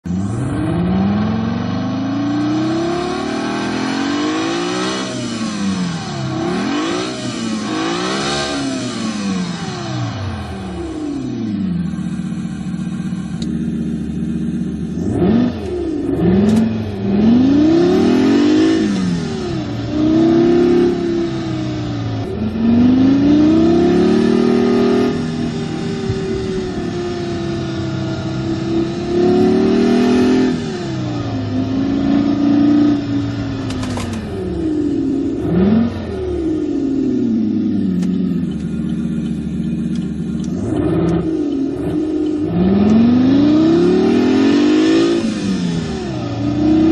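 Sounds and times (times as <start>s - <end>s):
simulated car engine revving: 0.0s - 46.9s.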